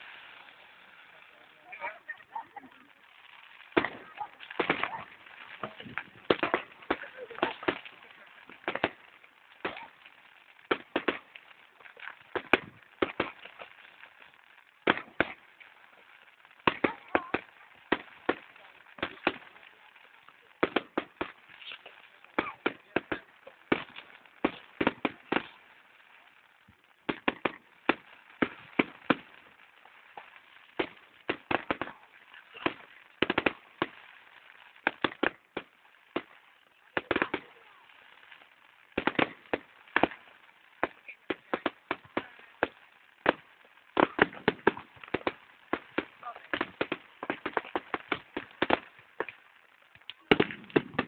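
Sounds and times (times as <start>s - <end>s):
fireworks bangs: 0.0s - 51.0s.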